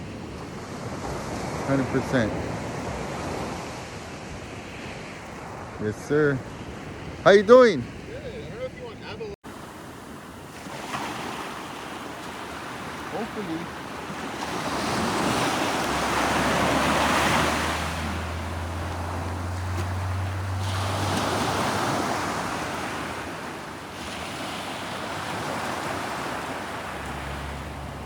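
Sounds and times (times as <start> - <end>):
surf breaking over rocks: 7.5 - 28.0.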